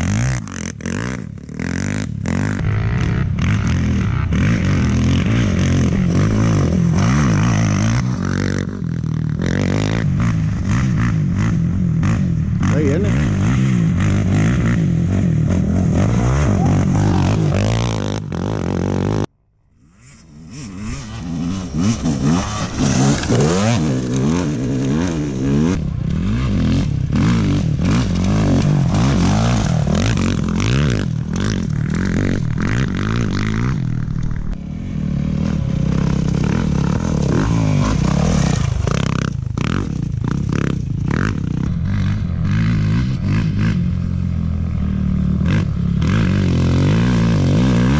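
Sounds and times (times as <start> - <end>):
motorcycle engines revving: 0.0 - 47.9
scraping and clattering terrain: 20.1 - 34.6, 35.4 - 43.4.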